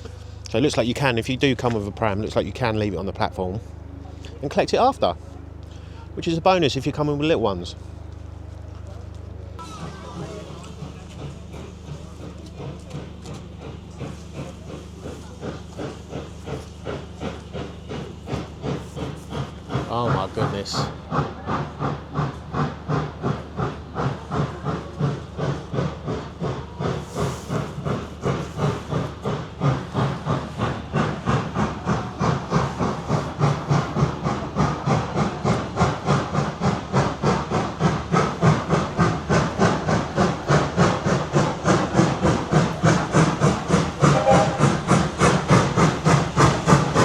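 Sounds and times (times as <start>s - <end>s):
steam locomotive chuffing: 0.0s - 47.0s
steam hissing: 9.7s - 47.0s.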